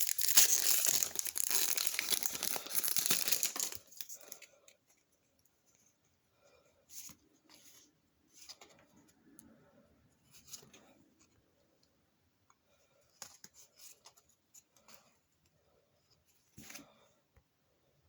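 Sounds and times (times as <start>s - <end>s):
foil wrapper tearing and crinkling: 0.0s - 4.4s.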